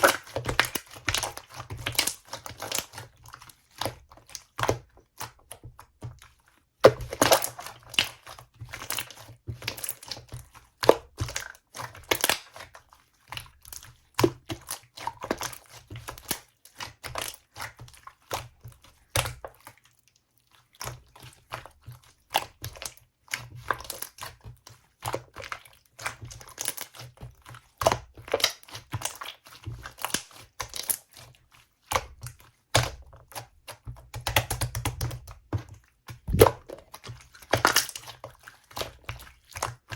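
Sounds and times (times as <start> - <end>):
small bubble pops: 36.1 - 37.9
slime squishing sticky clicks: 36.2 - 36.8.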